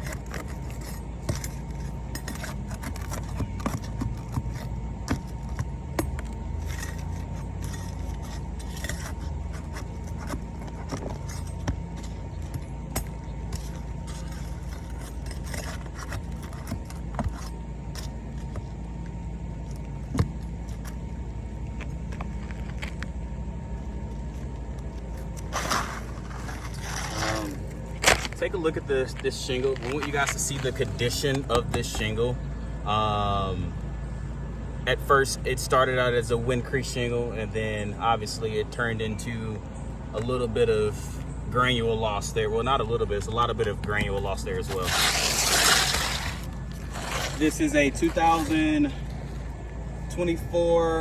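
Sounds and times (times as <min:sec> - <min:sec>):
tools clicking and scraping on shingles: 0:00.0 - 0:21.1, 0:24.3 - 0:32.4, 0:42.6 - 0:50.6
steady low rumble: 0:00.0 - 0:51.0.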